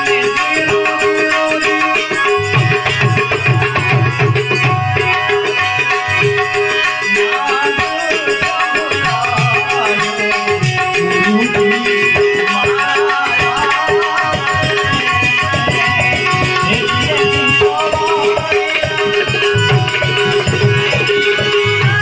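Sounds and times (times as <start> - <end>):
tabla and hand percussion: 0.0 - 22.0
wavering melody line: 8.1 - 17.6
steady held drone note: 10.5 - 13.2.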